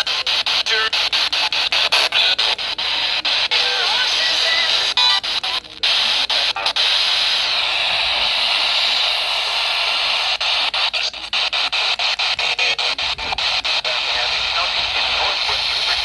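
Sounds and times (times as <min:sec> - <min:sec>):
crackling static: 0:00.0 - 0:16.0
radio static hiss: 0:00.0 - 0:16.0.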